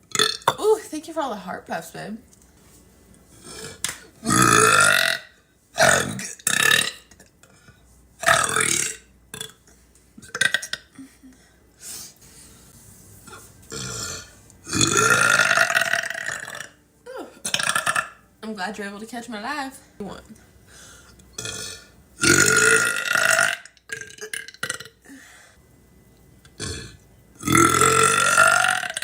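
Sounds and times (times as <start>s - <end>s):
woman burping: 0.1s - 0.6s, 3.4s - 5.2s, 5.8s - 7.3s, 10.2s - 11.3s, 13.7s - 18.2s, 21.4s - 25.2s, 26.6s - 29.0s.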